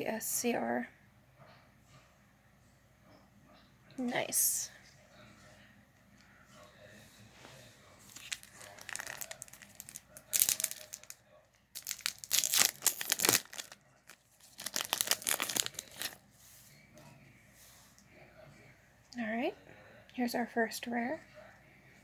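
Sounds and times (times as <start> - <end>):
card pack wrapper crinkling: 8.1 - 11.2, 11.8 - 16.2.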